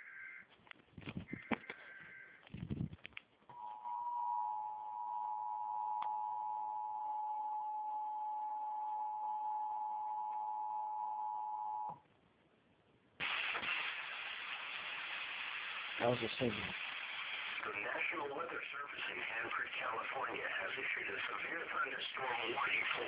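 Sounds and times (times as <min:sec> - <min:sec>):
steady hiss: 0:13.2 - 0:23.0.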